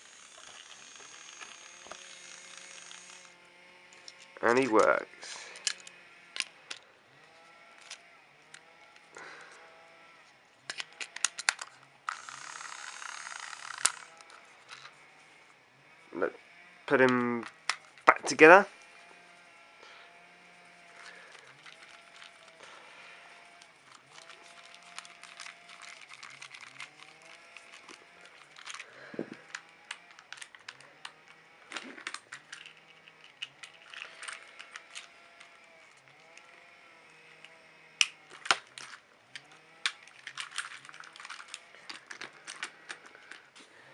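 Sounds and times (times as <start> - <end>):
plastic toy clicks: 0.0 - 3.4, 5.5 - 6.8, 10.7 - 14.9, 17.1 - 18.1, 21.4 - 22.6, 23.5 - 36.6, 37.2 - 43.5
small electric motor whirring: 0.0 - 43.9.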